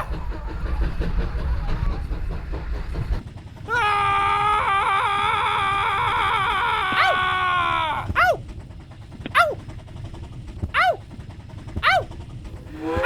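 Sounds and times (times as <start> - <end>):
cartoon train rumble: 0.0 - 13.0
cartoon character screaming: 3.7 - 8.4, 9.4 - 9.6, 10.7 - 11.0.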